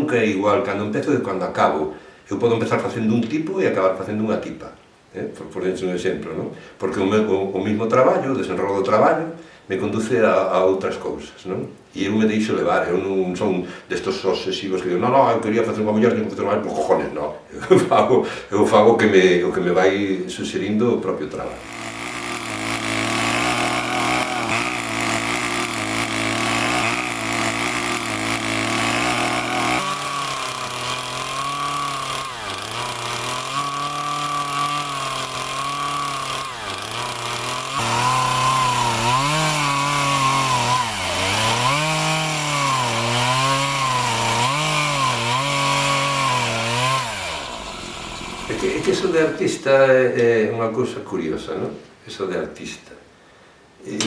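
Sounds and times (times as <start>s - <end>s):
chainsaw cutting wood: 21.4s - 49.4s.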